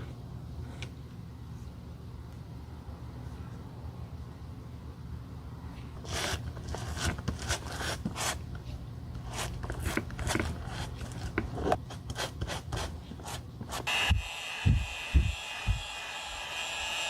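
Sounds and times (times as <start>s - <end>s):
steady low hum: 0.0s - 17.0s
hand tool filing a shoe: 6.0s - 8.4s, 9.2s - 16.1s.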